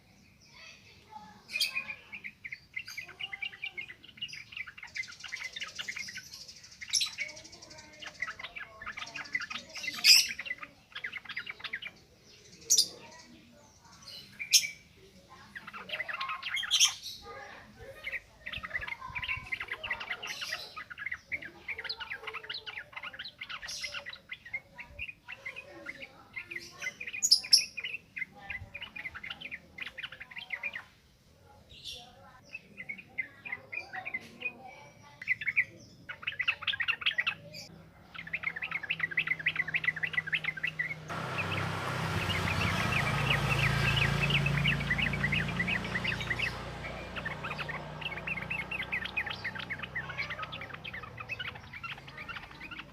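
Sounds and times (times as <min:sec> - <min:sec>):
bird chattering song: 0:00.0 - 0:52.9.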